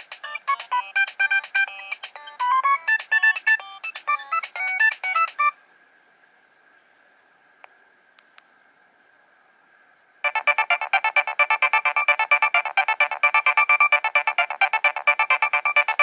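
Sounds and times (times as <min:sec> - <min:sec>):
faint steady hum: 0:00.0 - 0:16.0
mobile phone ringtone melody: 0:00.2 - 0:05.5, 0:10.2 - 0:16.0.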